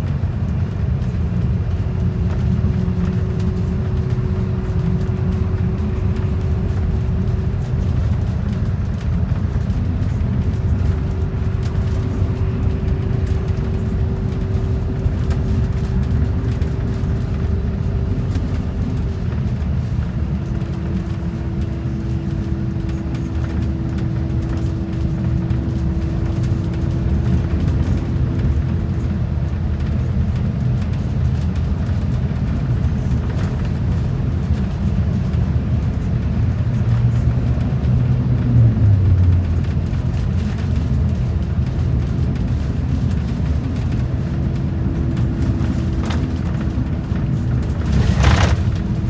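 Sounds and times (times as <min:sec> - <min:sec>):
bus engine and road rumble: 0:00.0 - 0:49.0.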